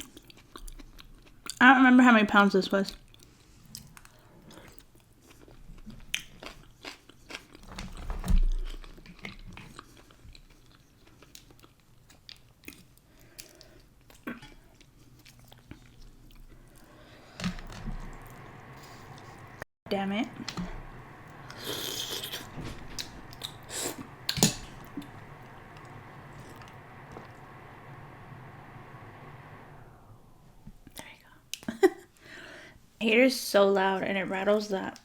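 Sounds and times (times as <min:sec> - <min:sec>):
low thump: 0:22.3 - 0:29.5.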